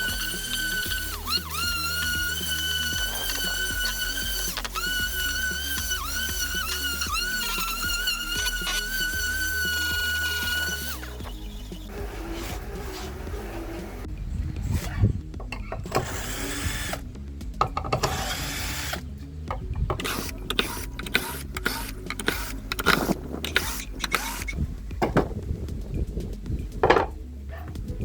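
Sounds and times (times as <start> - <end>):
power drill motor whining: 0.0 - 25.3
knocks and clatter on wood: 17.6 - 18.2, 24.9 - 25.8, 26.7 - 27.8.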